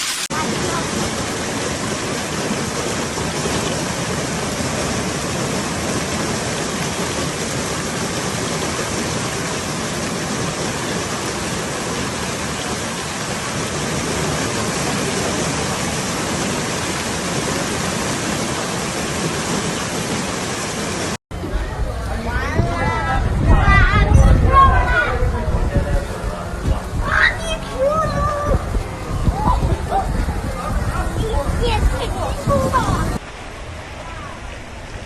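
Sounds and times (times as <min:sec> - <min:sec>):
rain and hail falling: 0:00.0 - 0:21.2.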